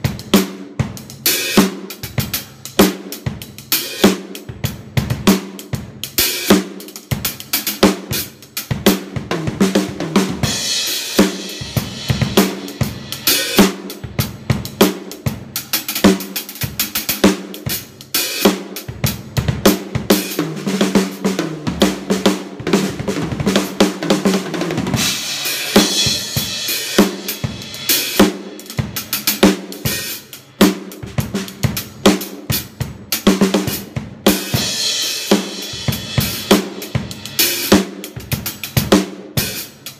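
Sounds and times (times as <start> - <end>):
drum kit groove: 0.0 - 39.9.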